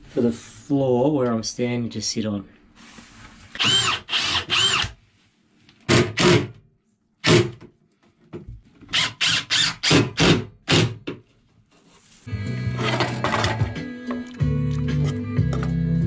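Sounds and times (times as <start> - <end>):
power drill running: 3.6 - 5.0, 8.9 - 10.8
background music: 12.3 - 16.0.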